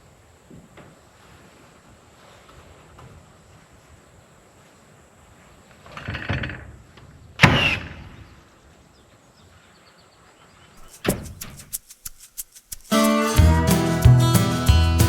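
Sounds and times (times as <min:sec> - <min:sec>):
quick clicks: 0:10.8 - 0:13.3
scraping rustle: 0:10.8 - 0:13.4.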